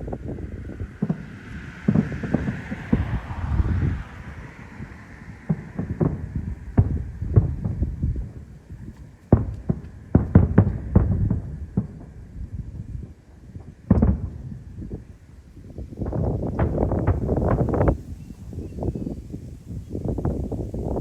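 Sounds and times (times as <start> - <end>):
fireworks booms and bangs: 0.0 - 15.1, 16.0 - 21.0
crackling firework bursts: 0.0 - 21.0.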